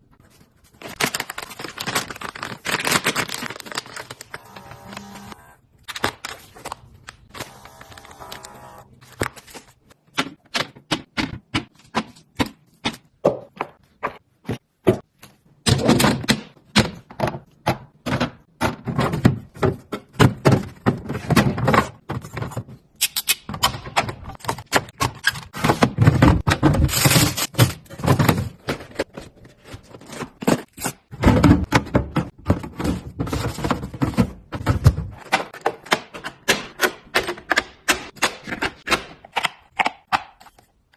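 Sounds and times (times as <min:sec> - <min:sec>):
packages rustling: 0:00.1 - 0:05.2, 0:05.8 - 0:10.0
plastic boxes clacking and knocking: 0:09.1 - 0:40.9.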